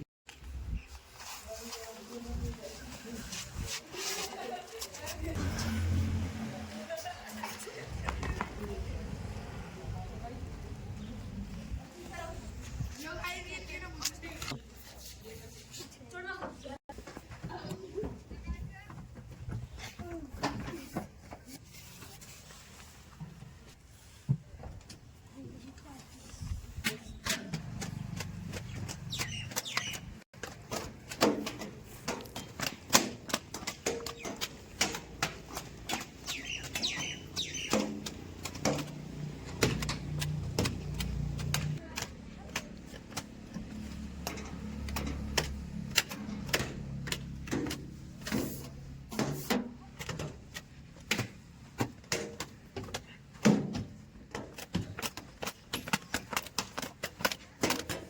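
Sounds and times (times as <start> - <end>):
bird chirps: 28.7 - 30.2, 36.2 - 38.0.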